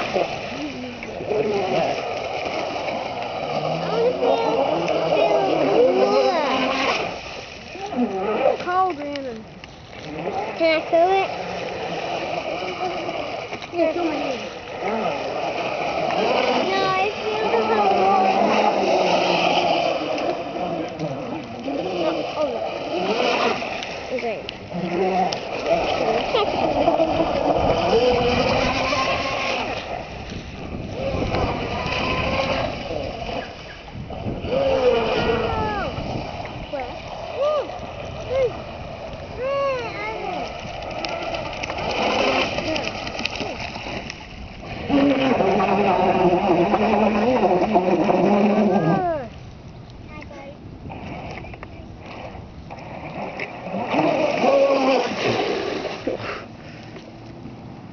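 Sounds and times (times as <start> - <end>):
electric rc boat motor: 0.0 - 49.4, 50.8 - 56.6
water spray splashing: 0.0 - 49.4, 52.8 - 56.9
wind on microphone: 0.0 - 56.3
electric motor whining: 24.7 - 37.4.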